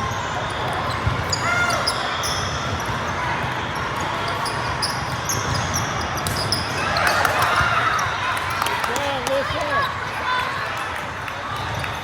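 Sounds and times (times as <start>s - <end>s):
sneaker squeaks: 0.0s - 8.2s.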